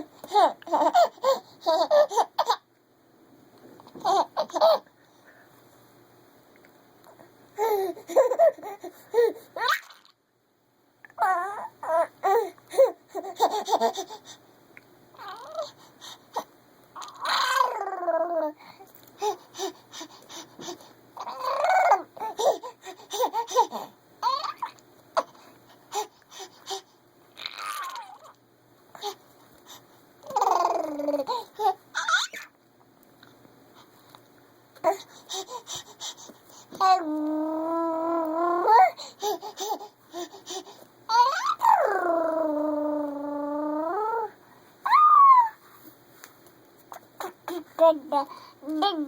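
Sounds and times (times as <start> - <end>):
baby squealing and growling: 7.6 - 10.1, 11.2 - 14.0, 15.2 - 15.8, 17.0 - 18.6, 21.2 - 24.8, 27.4 - 28.4, 30.2 - 32.6, 36.8 - 40.3, 41.1 - 45.6.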